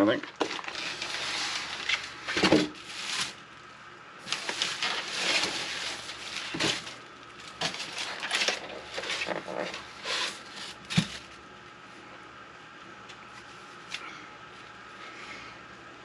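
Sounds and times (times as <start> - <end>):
packaging rustling: 0.3 - 3.5, 4.2 - 11.4.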